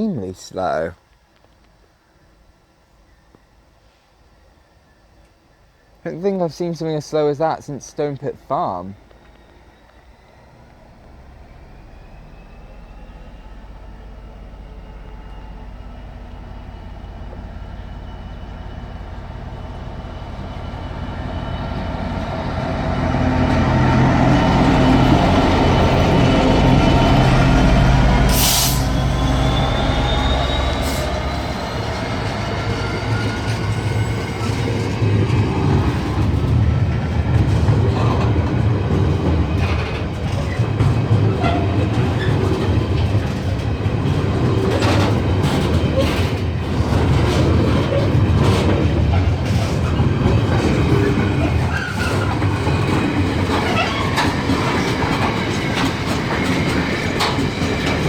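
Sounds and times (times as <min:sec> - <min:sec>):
train running gear droning: 0:00.0 - 0:58.0
rising whine: 0:09.1 - 0:37.1
wheels clicking over rail joints: 0:31.9 - 0:58.0.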